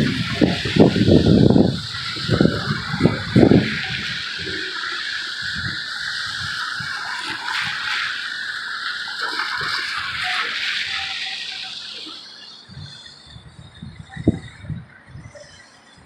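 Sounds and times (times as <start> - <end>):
wind buffeting microphone: 0.0 - 11.8, 12.6 - 16.0
wet hiss of rainy street: 0.0 - 14.4.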